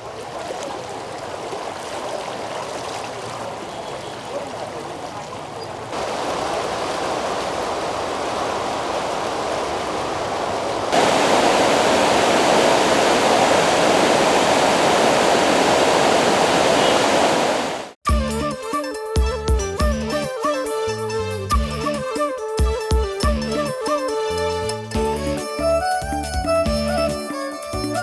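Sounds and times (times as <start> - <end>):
river water rushing: 0.0 - 18.0.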